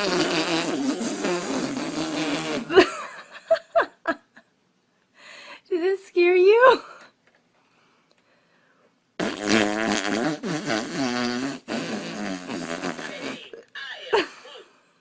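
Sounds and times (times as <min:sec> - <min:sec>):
fart noise: 0:00.0 - 0:02.9, 0:09.2 - 0:13.7.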